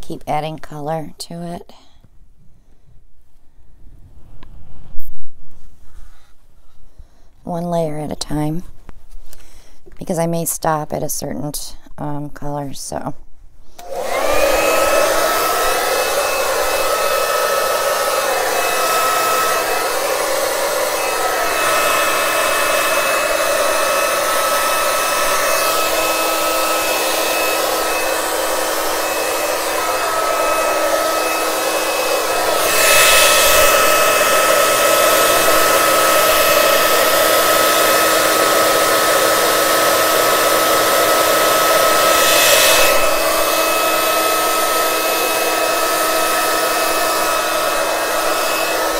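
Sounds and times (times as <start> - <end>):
blow dryer running: 13.8 - 48.9.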